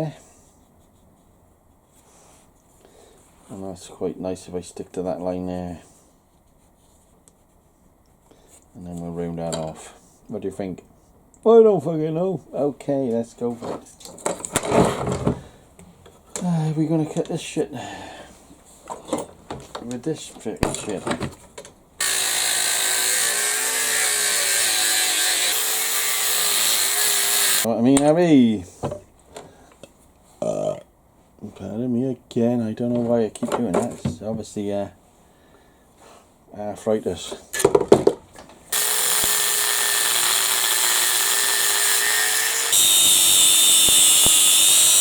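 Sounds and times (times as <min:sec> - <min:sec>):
power tool cutting metal: 0:22.0 - 0:27.7, 0:38.7 - 0:45.0.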